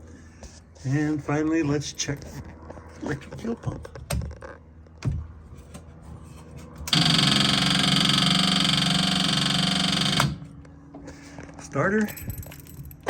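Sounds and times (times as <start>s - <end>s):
electric fuel pump buzzing: 6.8s - 11.2s.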